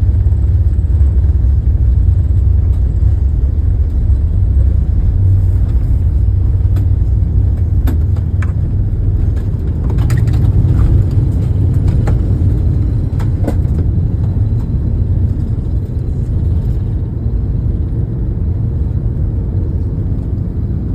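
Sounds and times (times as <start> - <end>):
deep rumble of jet engines: 0.0 - 20.9.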